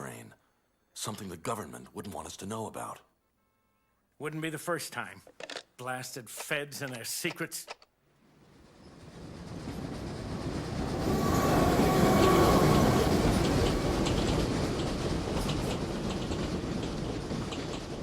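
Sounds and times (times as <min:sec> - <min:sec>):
train rumbling past: 0:08.2 - 0:18.0
wheels clicking over rail joints: 0:08.4 - 0:18.0.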